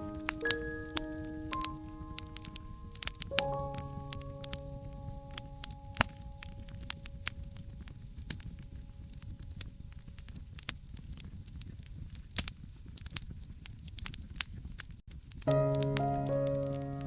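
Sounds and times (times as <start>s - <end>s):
music with long held notes: 0.0s - 7.4s, 15.5s - 17.0s
fireplace crackling: 0.0s - 17.0s
low rumble of fire: 0.0s - 17.0s.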